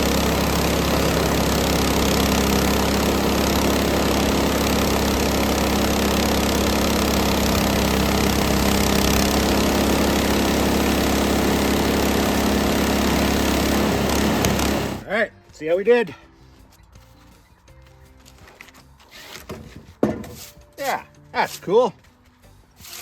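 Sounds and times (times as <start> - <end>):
band blade cutting wood: 0.0 - 15.0, 22.8 - 23.0
bandsaw mill engine running: 0.0 - 15.1.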